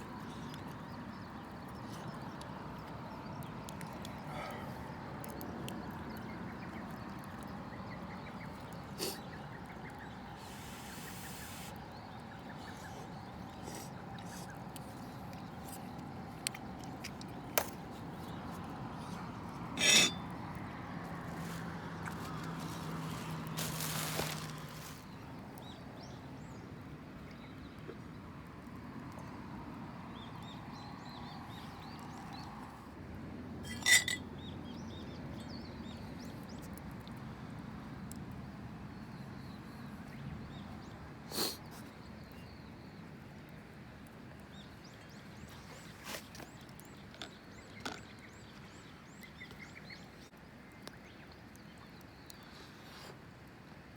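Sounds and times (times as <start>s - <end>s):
brief rushing hiss: 10.5s - 11.7s
utensils clinking on cookware: 19.8s - 20.2s, 33.6s - 34.2s.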